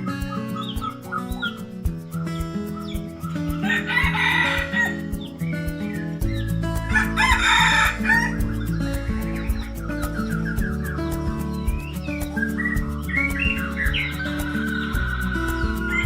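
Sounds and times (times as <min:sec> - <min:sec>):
background music with steady beat: 0:00.0 - 0:16.0
small bird chirps: 0:00.0 - 0:16.0
roosters crowing: 0:03.3 - 0:05.6, 0:06.8 - 0:10.4.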